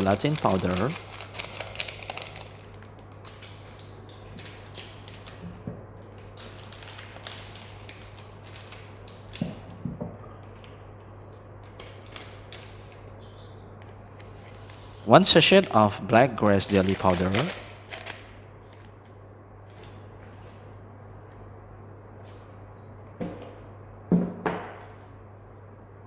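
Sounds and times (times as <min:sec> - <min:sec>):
sachets crinkling and clicking: 0:00.0 - 0:05.5, 0:06.2 - 0:09.4, 0:11.6 - 0:13.1, 0:15.4 - 0:19.2.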